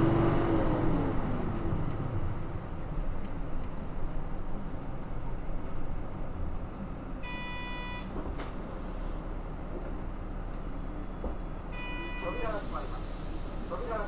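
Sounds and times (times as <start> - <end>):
bus diesel engine running: 0.0 - 14.0
short electronic beep: 7.2 - 8.0.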